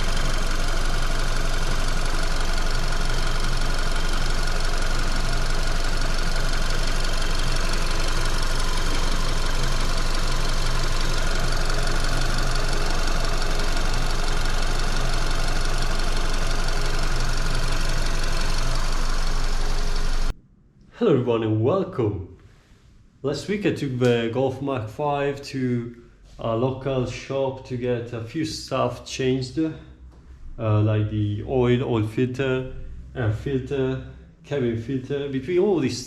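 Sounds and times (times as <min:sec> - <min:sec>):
car engine running: 0:00.0 - 0:20.3.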